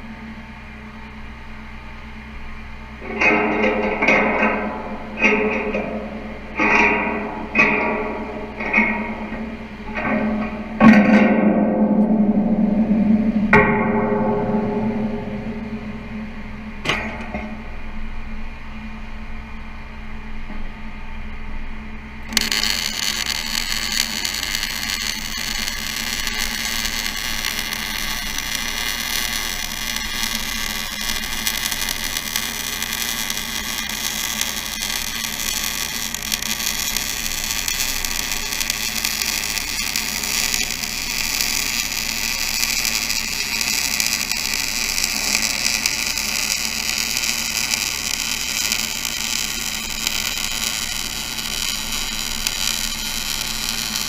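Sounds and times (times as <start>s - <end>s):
constant low hum: 0.0s - 54.0s
welding arc crackling: 3.0s - 11.3s, 22.2s - 54.0s.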